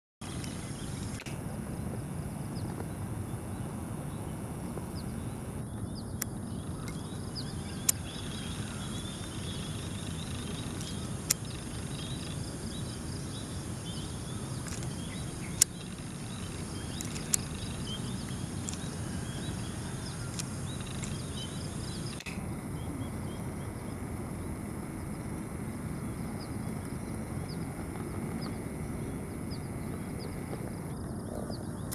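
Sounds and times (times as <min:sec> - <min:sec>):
steady low rumble: 0:00.2 - 0:31.9
faint high bird chirps: 0:04.9 - 0:23.9
sharp clicks: 0:14.6 - 0:19.4, 0:20.2 - 0:22.4.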